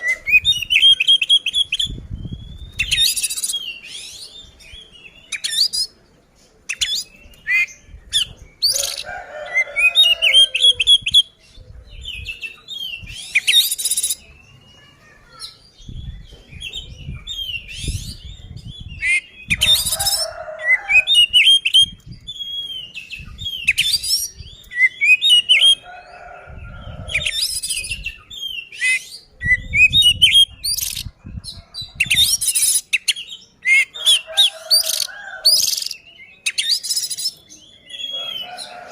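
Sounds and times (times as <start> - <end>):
bird singing whistles and rasps: 0.0 - 5.9.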